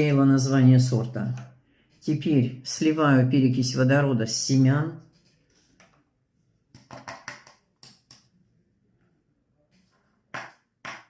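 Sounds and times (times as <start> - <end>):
small lids clicking and tapping: 6.8 - 8.3.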